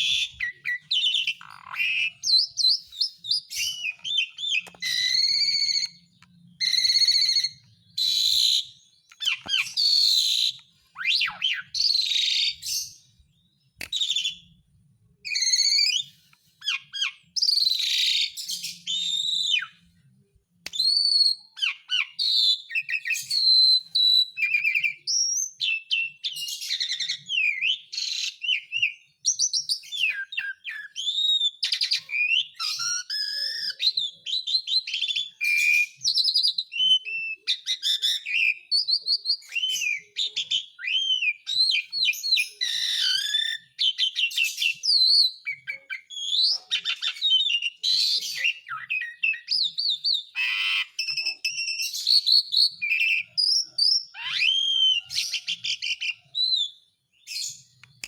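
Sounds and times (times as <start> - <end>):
starling singing: 0.0 - 13.1, 29.7 - 58.0.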